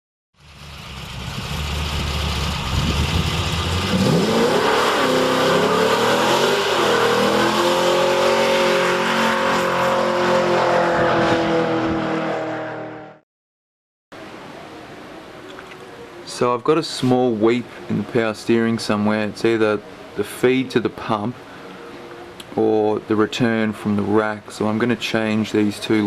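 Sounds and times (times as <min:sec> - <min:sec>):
car engine revving: 0:00.4 - 0:13.2.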